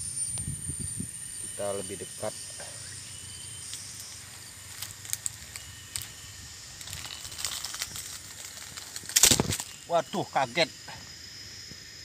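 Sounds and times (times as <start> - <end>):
high insect drone: 0.0 - 12.0
footsteps crunching dry leaves: 3.6 - 9.9.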